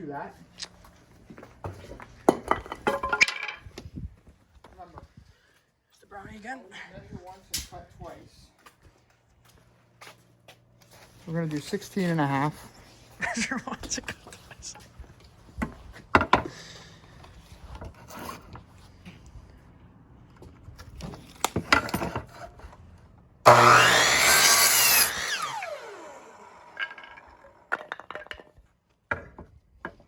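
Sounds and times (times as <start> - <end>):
wood knocking and clattering: 1.6 - 3.7, 26.8 - 30.0
power saw cutting wood: 23.5 - 27.5
saw blade winding down whine: 23.5 - 27.5.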